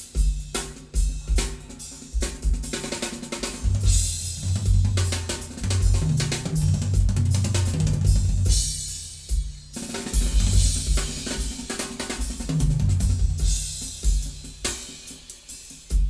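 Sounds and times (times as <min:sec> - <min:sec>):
drum kit playing: 0:00.0 - 0:16.0
low bass line: 0:03.7 - 0:08.6.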